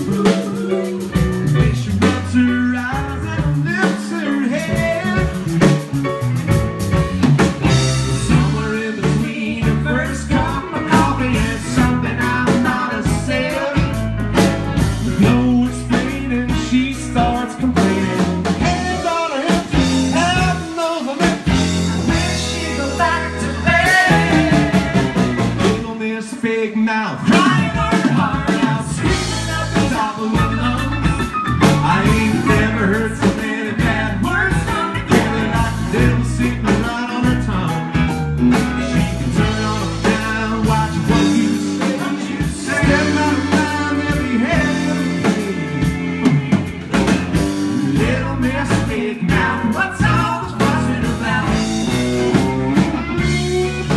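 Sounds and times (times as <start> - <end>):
country band playing: 0.0 - 53.9.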